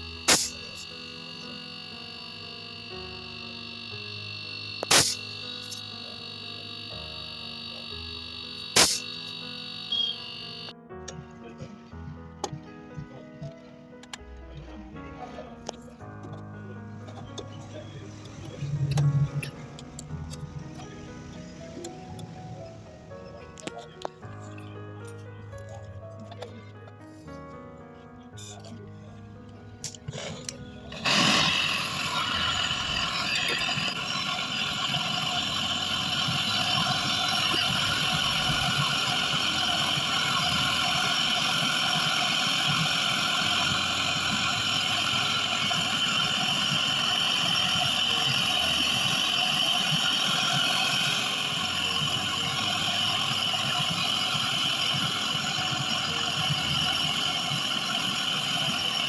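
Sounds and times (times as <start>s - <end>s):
vacuum pump humming with hiss: 0.0s - 11.2s, 15.7s - 24.3s, 29.8s - 59.0s.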